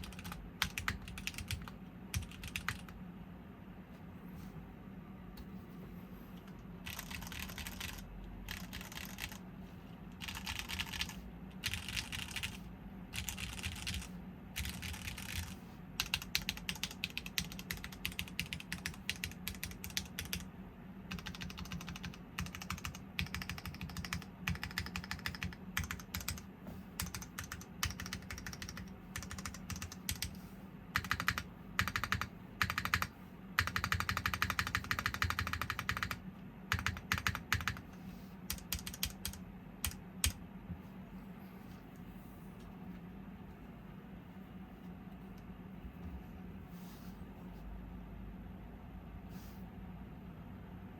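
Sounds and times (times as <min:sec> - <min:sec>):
mechanical keyboard typing: 0:00.0 - 0:03.0, 0:06.8 - 0:09.4, 0:10.1 - 0:20.5, 0:21.1 - 0:30.4, 0:31.0 - 0:37.9, 0:38.5 - 0:40.4.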